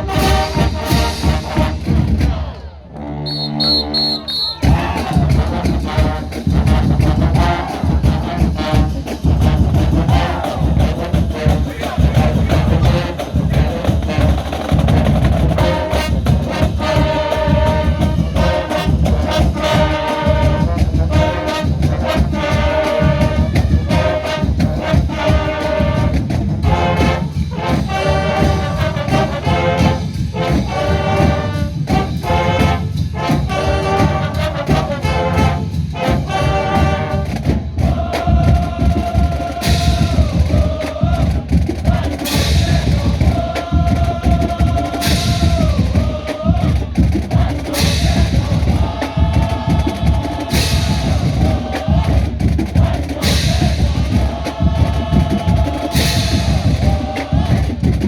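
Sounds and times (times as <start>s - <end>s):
steady drum beat: 0.0s - 2.6s, 3.3s - 58.0s
brass chords: 0.0s - 41.0s.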